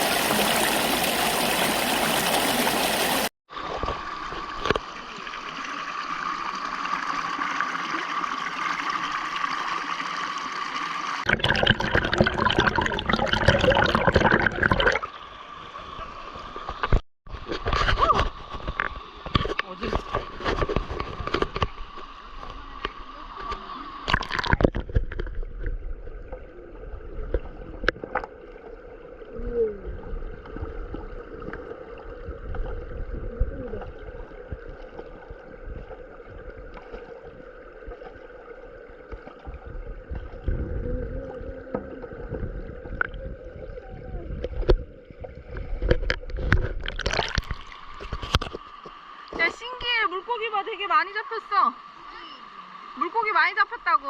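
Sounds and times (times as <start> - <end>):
stream flowing over rocks: 0.0 - 16.9, 45.8 - 54.0.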